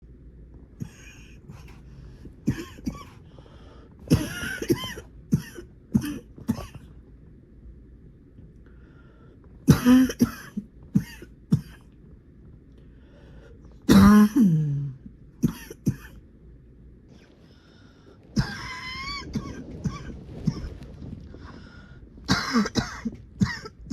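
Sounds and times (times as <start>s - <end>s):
short harsh coughs: 4.1s - 6.8s, 22.3s - 23.9s.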